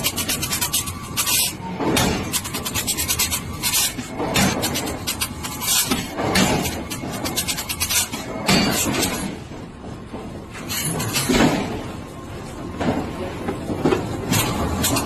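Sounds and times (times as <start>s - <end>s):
metal rasping on train wheel: 0.0s - 9.2s.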